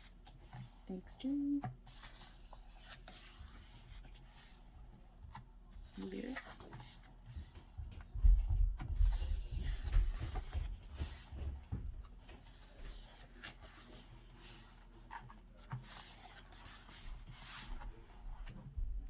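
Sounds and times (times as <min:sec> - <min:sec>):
book thumping: 0:07.4 - 0:13.2.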